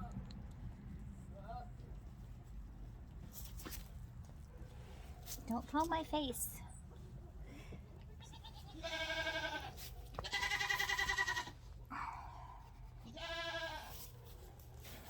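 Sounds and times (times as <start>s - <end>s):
goat kids bleating: 8.2s - 11.6s, 13.0s - 14.0s.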